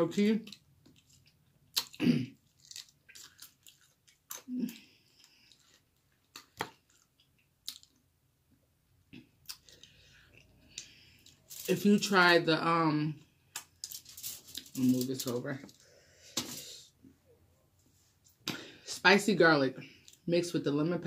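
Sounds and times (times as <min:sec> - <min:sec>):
chewing and crunching food: 0:00.4 - 0:08.1, 0:09.1 - 0:11.8.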